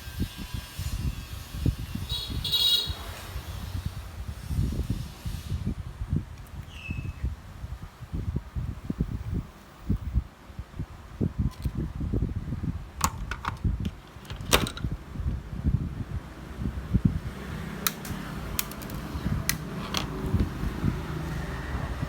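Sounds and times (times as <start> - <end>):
low rumbling handling noise: 11.1 - 22.0
tools clicking and knocking: 13.0 - 14.9, 17.9 - 20.5.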